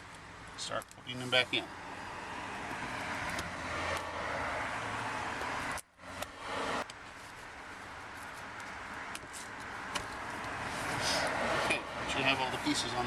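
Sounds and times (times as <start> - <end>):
distant traffic: 0.0 - 13.0.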